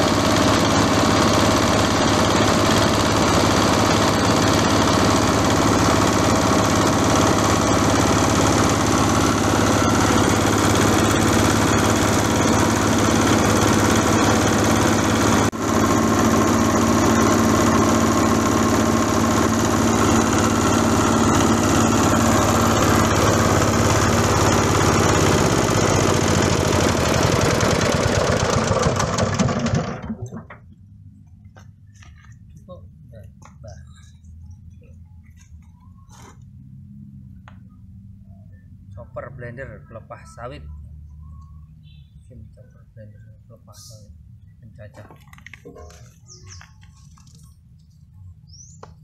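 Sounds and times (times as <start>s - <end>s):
frond chopper machine running: 0.0s - 30.8s.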